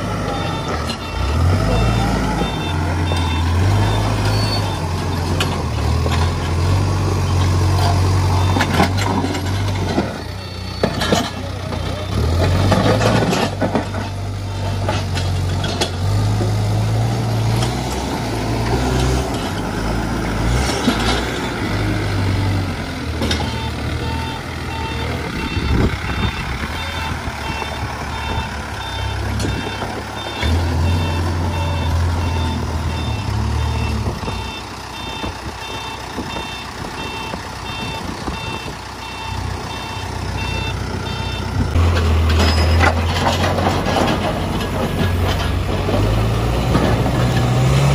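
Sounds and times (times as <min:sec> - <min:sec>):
diesel engine running: 0:00.0 - 0:47.9
reversing alarm beeping: 0:00.2 - 0:05.3, 0:08.3 - 0:11.4, 0:23.2 - 0:41.7.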